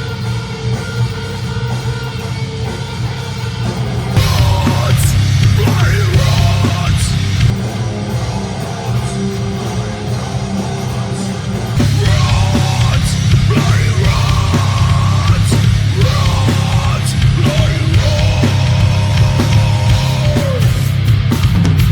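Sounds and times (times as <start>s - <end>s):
heavy metal music: 0.0s - 21.9s.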